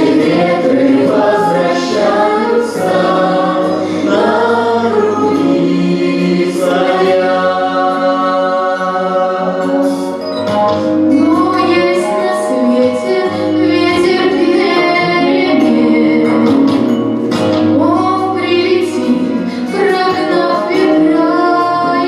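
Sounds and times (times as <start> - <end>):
instrumental backing: 0.0 - 22.0
woman singing: 11.1 - 16.9, 17.8 - 22.0.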